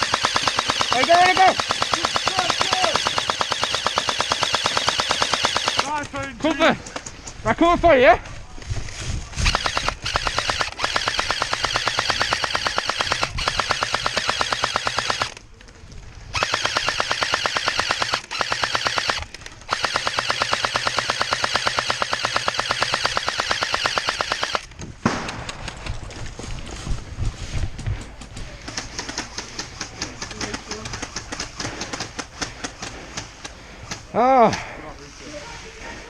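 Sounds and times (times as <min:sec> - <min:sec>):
airsoft gun full-auto bursts: 0:00.0 - 0:06.0, 0:09.4 - 0:15.4, 0:16.3 - 0:25.3
scattered airsoft shots: 0:00.0 - 0:06.1, 0:09.4 - 0:15.4, 0:16.4 - 0:26.0.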